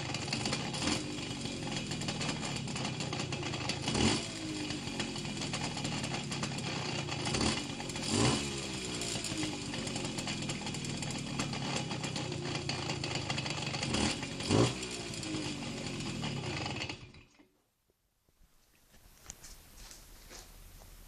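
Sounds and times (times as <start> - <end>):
moped engine idling and revving: 0.0 - 17.4.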